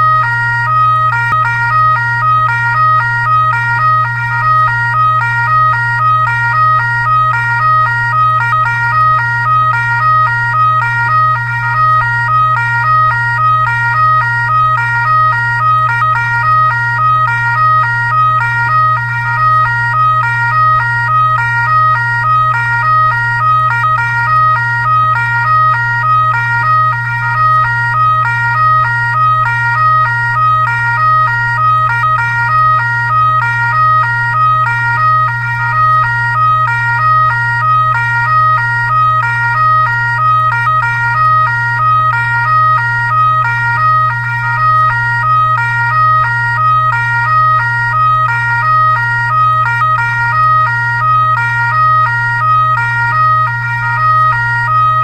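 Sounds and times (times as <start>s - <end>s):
constant low hum: 0.0s - 55.0s
electronic siren alternating tones: 0.0s - 55.0s.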